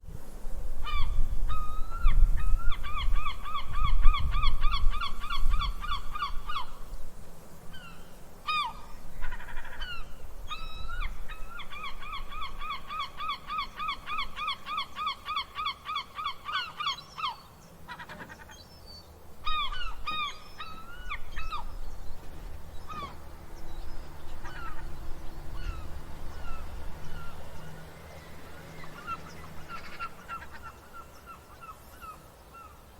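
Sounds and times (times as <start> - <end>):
seagulls laughing cries: 8.5 - 18.6, 24.4 - 27.5, 28.8 - 32.7.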